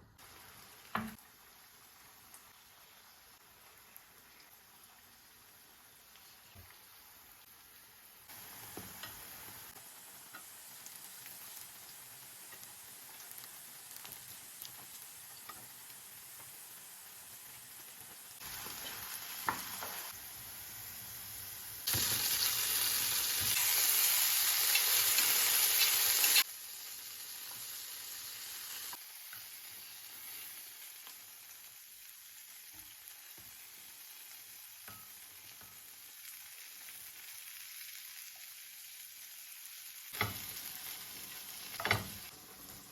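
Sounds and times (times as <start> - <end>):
food sizzling in a pan: 0.0 - 42.9.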